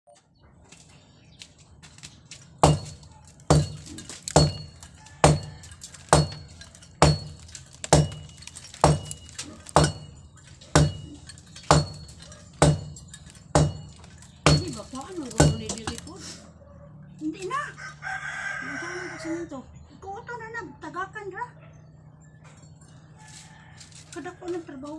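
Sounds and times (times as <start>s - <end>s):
hammer striking metal: 2.6s - 16.2s.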